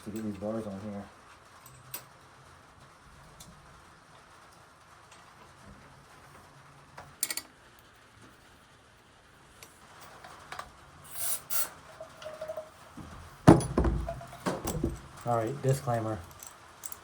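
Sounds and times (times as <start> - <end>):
short scraping hisses: 11.1 - 11.8
loud clunk: 13.0 - 15.2.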